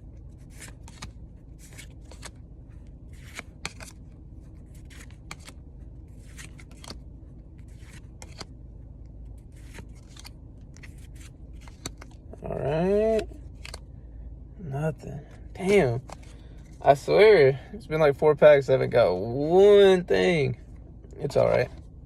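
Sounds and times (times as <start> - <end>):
low steady hum: 0.0 - 22.0
trading cards being flipped: 0.4 - 2.4, 3.1 - 7.0, 7.6 - 8.5, 9.4 - 12.2, 13.0 - 13.8, 15.6 - 16.8.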